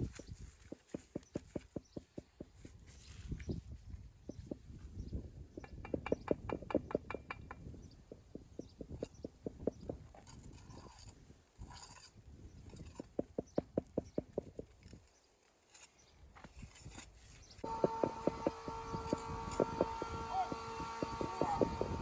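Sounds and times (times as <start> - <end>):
hand tool tapping on stone: 0.6 - 2.6, 17.6 - 21.9.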